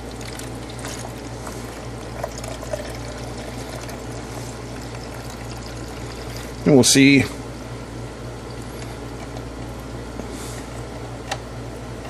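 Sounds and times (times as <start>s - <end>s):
water pouring into tank: 0.0s - 6.6s.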